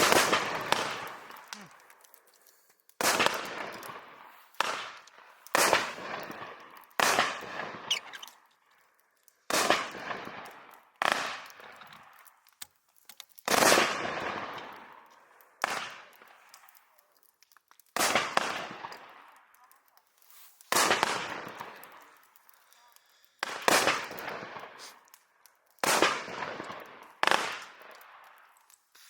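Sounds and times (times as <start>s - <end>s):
fireworks cake bangs: 0.0s - 1.8s, 3.0s - 8.3s, 20.4s - 22.2s, 23.4s - 25.1s.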